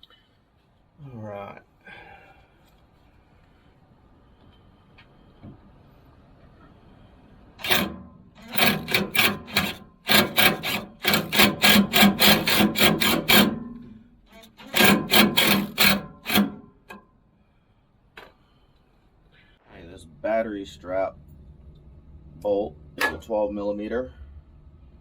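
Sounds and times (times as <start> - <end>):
cordless drill bursts: 7.6 - 13.6, 14.4 - 16.6.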